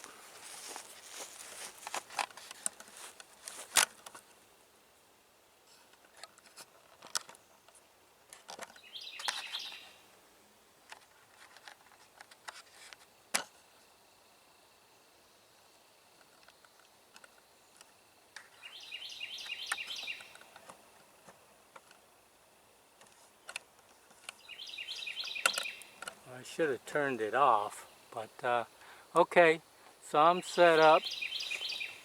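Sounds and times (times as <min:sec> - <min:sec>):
tripod clicks and knocks: 0:01.8 - 0:04.2.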